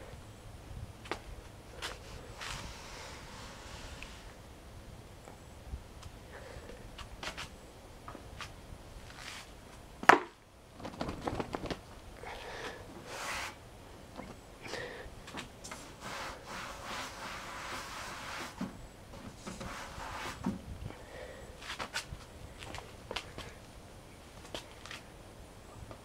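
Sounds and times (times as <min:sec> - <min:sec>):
brush scrubbing computer case: 0:13.0 - 0:13.6, 0:15.8 - 0:18.7, 0:19.3 - 0:20.5.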